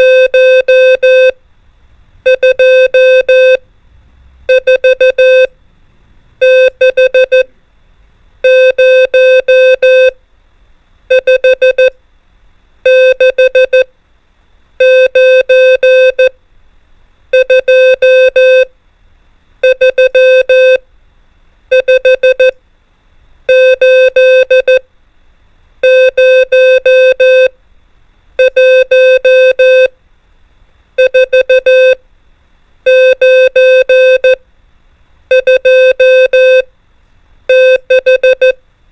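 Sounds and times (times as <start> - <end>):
morse code tone: 0.0 - 1.4, 2.2 - 3.6, 4.5 - 5.6, 6.4 - 7.5, 8.4 - 10.2, 11.1 - 12.0, 12.9 - 13.9, 14.8 - 16.3, 17.4 - 18.7, 19.6 - 20.8, 21.7 - 22.6, 23.5 - 24.8, 25.8 - 27.5, 28.4 - 29.9, 31.0 - 32.0, 32.9 - 34.4, 35.3 - 36.7, 37.5 - 38.6.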